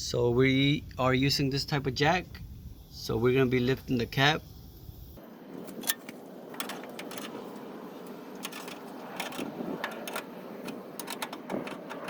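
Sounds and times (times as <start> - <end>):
low mechanical noise: 0.0 - 12.0
metallic clicks and rattles of jack: 5.7 - 12.0.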